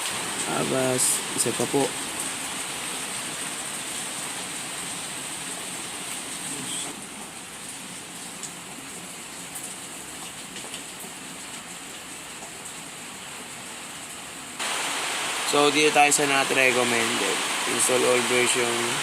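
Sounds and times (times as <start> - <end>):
steady hissing noise: 14.6 - 19.0.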